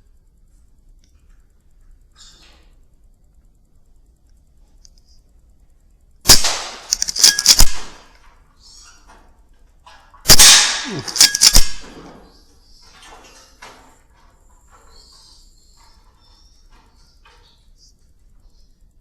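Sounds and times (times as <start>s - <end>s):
air rifle shot crack: 6.3s - 8.1s, 10.3s - 12.0s
metallic clicks of rifle action: 6.3s - 8.2s, 10.3s - 12.0s.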